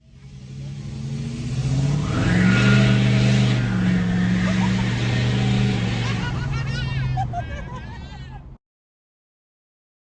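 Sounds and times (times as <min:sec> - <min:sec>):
vehicle engine revving: 0:00.0 - 0:07.4.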